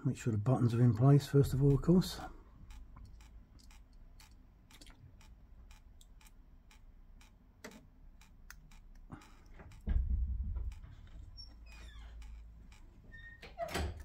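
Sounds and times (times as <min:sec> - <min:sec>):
thump: 0:09.8 - 0:10.8.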